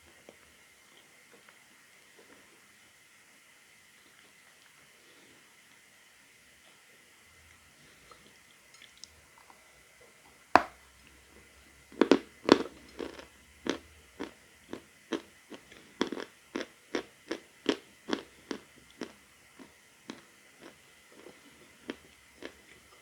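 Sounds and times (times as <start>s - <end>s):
chewing crunch: 11.9s - 23.0s.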